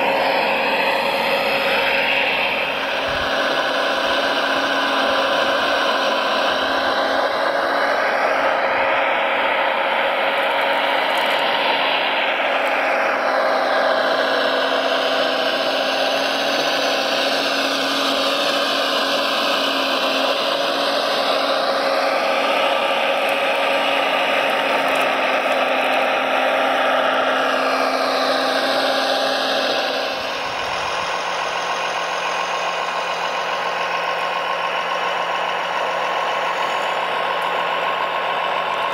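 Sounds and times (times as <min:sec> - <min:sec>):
constant hum: 0:00.0 - 0:38.9.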